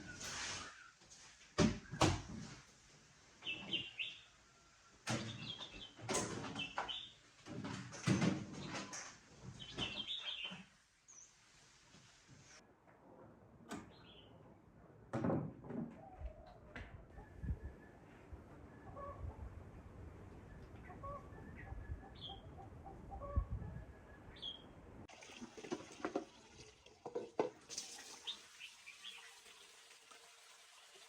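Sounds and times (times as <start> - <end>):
knocks and clatters: 5.0 - 10.0.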